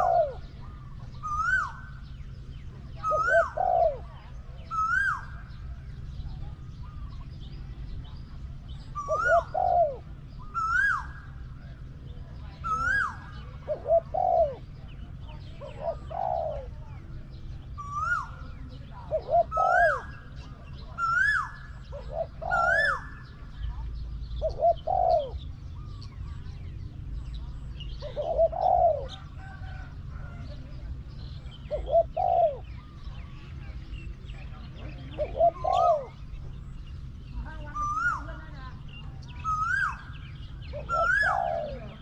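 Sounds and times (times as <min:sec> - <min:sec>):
bird whistling: 0:00.0 - 0:02.3, 0:04.7 - 0:05.4, 0:10.4 - 0:11.4, 0:17.8 - 0:23.5, 0:37.7 - 0:42.0
doves cooing: 0:00.0 - 0:42.0.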